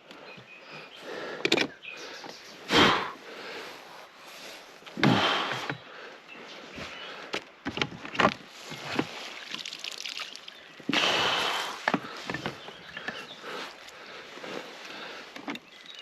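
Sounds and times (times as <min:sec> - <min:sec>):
water splashing: 0:08.8 - 0:11.8.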